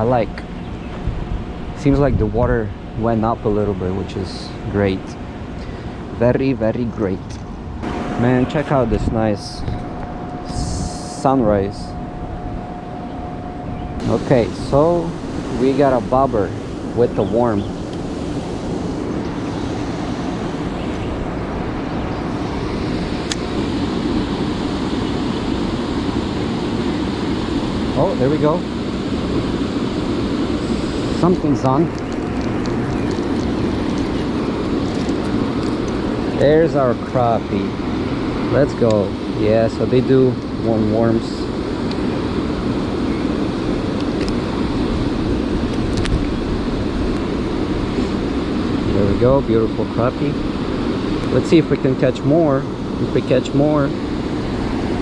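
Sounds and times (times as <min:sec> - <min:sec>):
outdoor rushing noise: 0:00.0 - 0:39.3
water rushing at a dam: 0:14.0 - 0:55.0.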